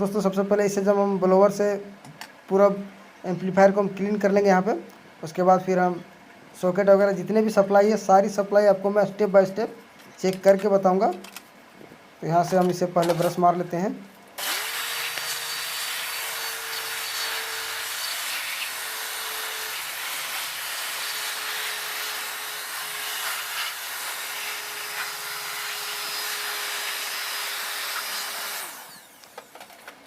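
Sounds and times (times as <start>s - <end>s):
electric air blower running: 14.4s - 29.6s.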